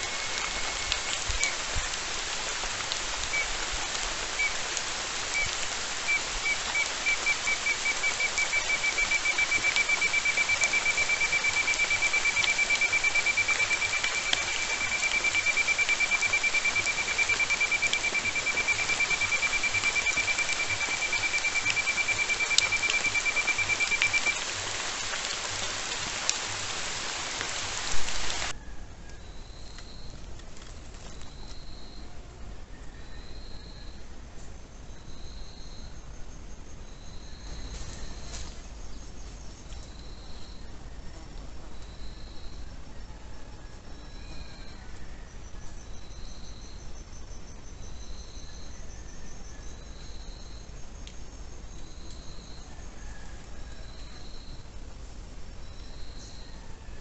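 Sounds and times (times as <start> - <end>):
rain on foliage: 0.0 - 33.3, 34.1 - 57.0
faint high chirps: 2.7 - 30.2.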